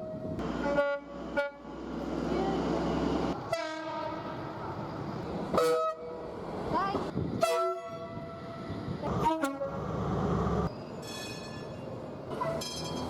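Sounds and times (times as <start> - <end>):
train horn blasts: 0.0 - 1.7, 3.4 - 4.2, 5.6 - 6.2, 7.3 - 9.8
passing train rumble: 0.0 - 13.0.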